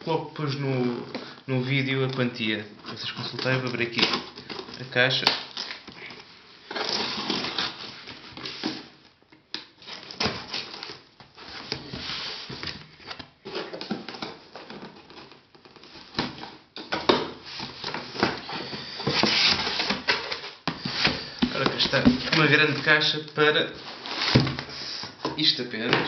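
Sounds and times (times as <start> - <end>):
cardboard box rustling and scraping: 9.8 - 13.8, 17.4 - 23.0, 23.8 - 24.8.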